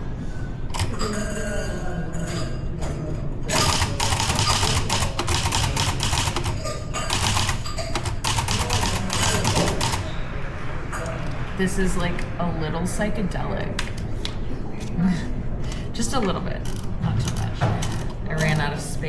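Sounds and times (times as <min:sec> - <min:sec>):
typewriter keys clicking: 0:03.5 - 0:10.1, 0:16.7 - 0:18.6.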